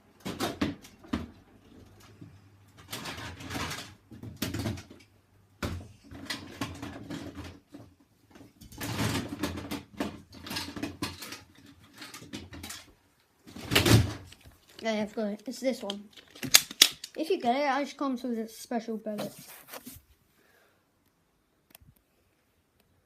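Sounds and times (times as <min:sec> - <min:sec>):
rummaging rustling and scraping: 0:19.1 - 0:20.1.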